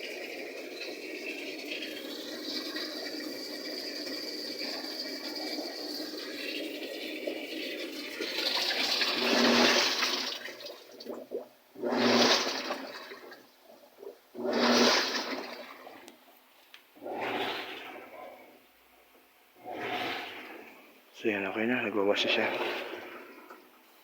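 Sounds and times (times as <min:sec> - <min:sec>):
washing machine motor hum: 0:00.0 - 0:11.0, 0:11.8 - 0:13.4, 0:14.3 - 0:16.1, 0:17.0 - 0:18.5, 0:19.6 - 0:23.7
rush of water filling: 0:00.0 - 0:16.1, 0:17.0 - 0:18.6, 0:19.6 - 0:24.0
water sloshing: 0:08.2 - 0:24.0.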